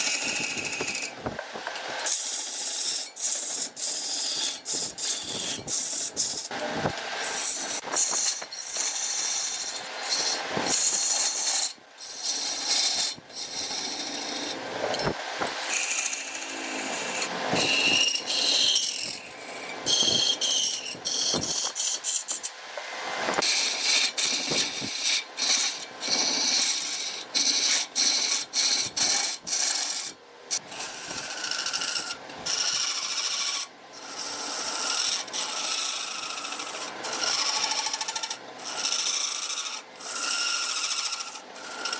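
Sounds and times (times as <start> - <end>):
lathe tool scraping wood: 0.0 - 41.9
lathe squeal: 7.3 - 15.1, 15.7 - 22.4, 30.8 - 41.9.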